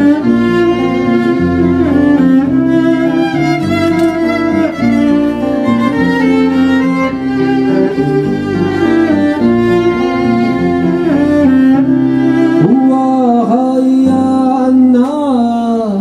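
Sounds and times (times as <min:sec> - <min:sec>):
violin cello and double bass bowing: 0:00.0 - 0:13.8.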